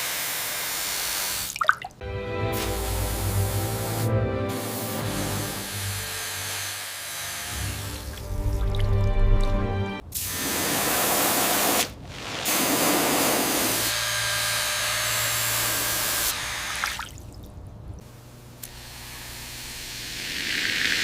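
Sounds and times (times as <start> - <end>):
hissing spray against metal: 2.6 - 5.7, 10.2 - 13.9.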